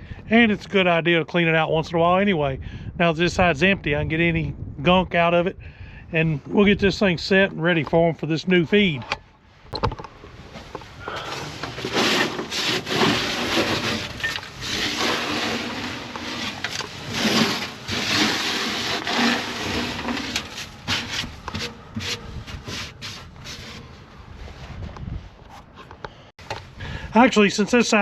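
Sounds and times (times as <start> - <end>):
scraping and rubbing strokes: 10.4 - 25.9.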